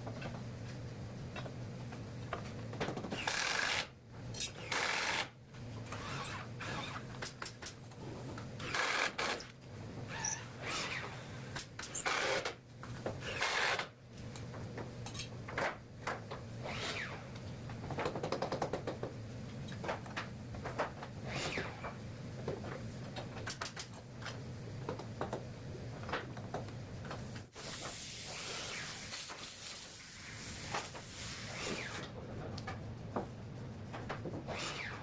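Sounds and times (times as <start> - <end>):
carpentry knocks and clatter: 1.3 - 3.4, 17.7 - 21.2, 21.8 - 27.4, 33.9 - 34.5.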